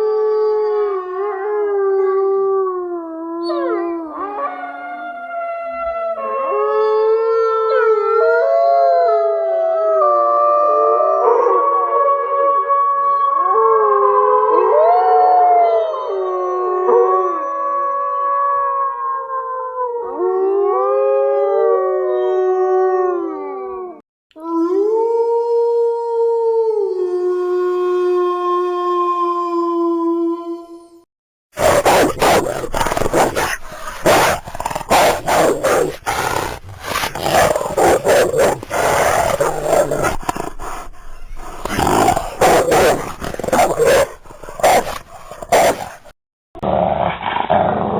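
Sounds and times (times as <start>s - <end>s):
wolves howling in chorus: 0.0s - 24.0s
wolf barking harshly: 31.6s - 46.1s
wolf growling: 31.6s - 47.9s.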